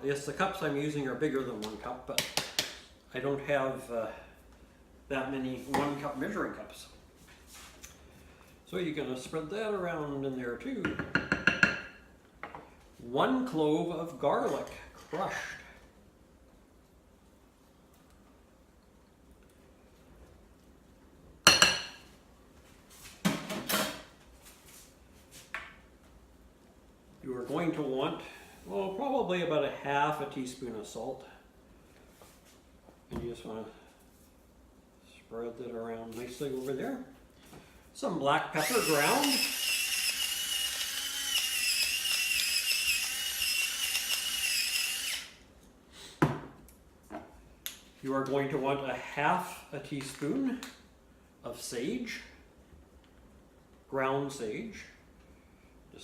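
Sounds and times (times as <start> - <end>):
dishes clinking: 21.5 - 22.0
electric pepper mill grinding: 38.6 - 45.4.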